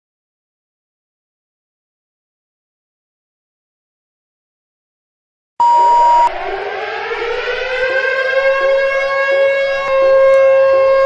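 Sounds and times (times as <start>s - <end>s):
loud single-pitch beep: 5.6s - 6.3s
air-raid siren wailing: 5.6s - 11.0s.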